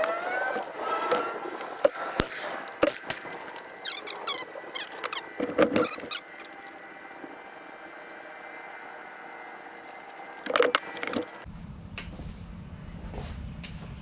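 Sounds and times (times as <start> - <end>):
metal parts squeaking and clicking: 0.0 - 6.8, 9.8 - 11.4
faint steady hum: 0.0 - 11.5.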